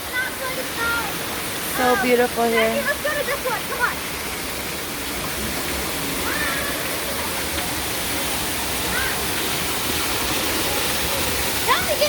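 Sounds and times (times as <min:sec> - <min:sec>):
waterfall roaring: 0:00.0 - 0:12.0.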